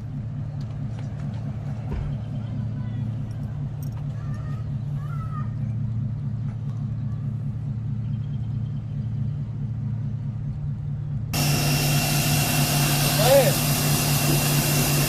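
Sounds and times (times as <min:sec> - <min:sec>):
pressure washer humming: 0:11.4 - 0:15.0.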